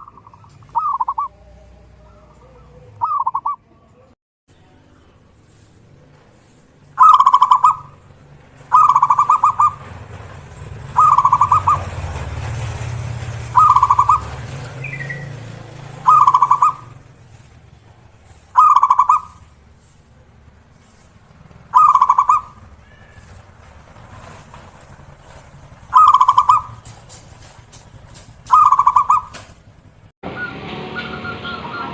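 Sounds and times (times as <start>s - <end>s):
dove cooing: 0.0s - 3.6s, 7.0s - 8.0s, 8.7s - 10.0s, 10.8s - 12.0s, 13.5s - 14.8s, 16.0s - 17.1s, 18.5s - 19.5s, 21.7s - 23.4s, 25.9s - 27.2s, 28.4s - 29.4s.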